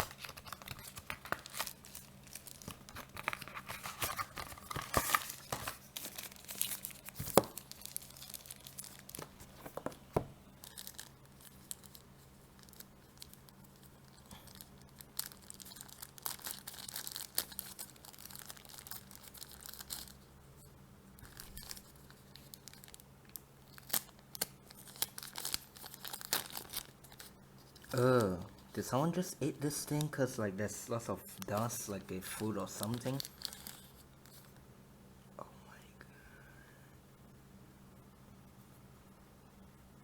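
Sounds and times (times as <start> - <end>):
paper wrapping tearing and crinkling: 0.0 - 9.6, 14.2 - 20.1, 23.7 - 28.4
faint fan hum: 0.0 - 40.0.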